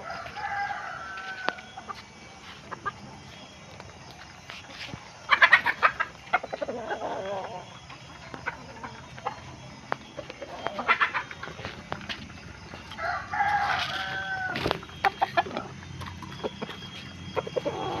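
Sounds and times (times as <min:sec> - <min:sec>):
rooster crowing: 0:00.0 - 0:01.8, 0:12.9 - 0:14.8
chickens clucking: 0:00.0 - 0:18.0.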